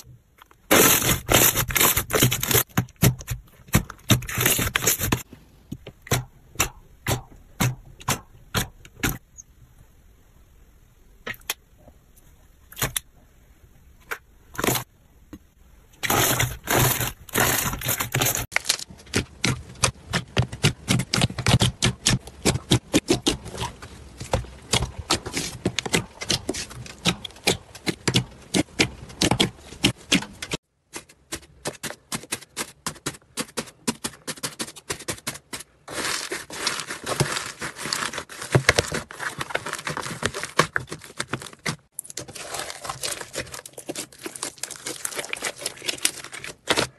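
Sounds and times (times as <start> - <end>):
slime crackling and popping: 41.9 - 46.9.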